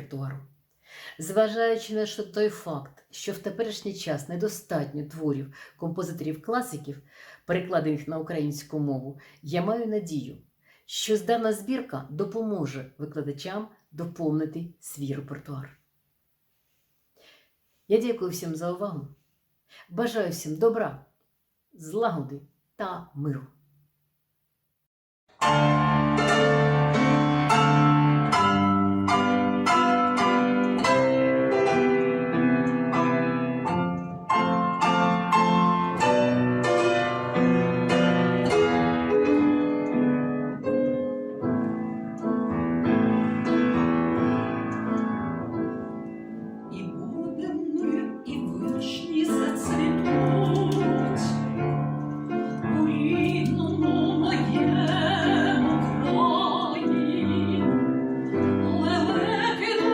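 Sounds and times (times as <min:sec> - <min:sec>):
classical piano: 0:25.4 - 0:59.9
operatic voice singing: 0:46.7 - 0:51.4, 0:52.7 - 0:59.9.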